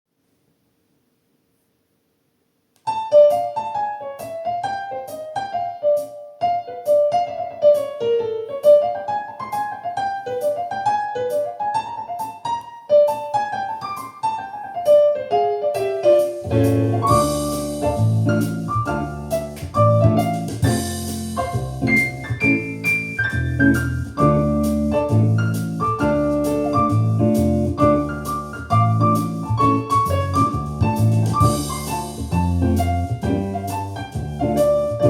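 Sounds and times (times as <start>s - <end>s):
solo piano melody: 2.8s - 35.0s
bass and drums accompaniment: 16.0s - 35.0s.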